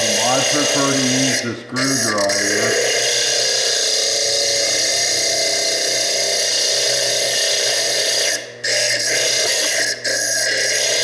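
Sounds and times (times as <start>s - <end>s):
lathe cutting disc whining: 0.0s - 3.1s.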